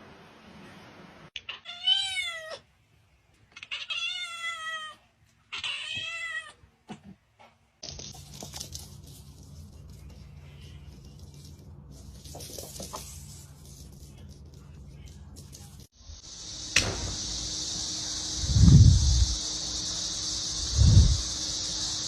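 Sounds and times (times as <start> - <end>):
cat meowing: 1.4 - 2.6.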